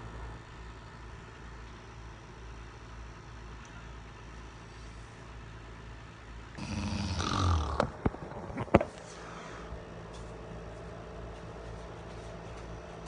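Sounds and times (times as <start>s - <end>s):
man snoring: 6.6s - 8.0s.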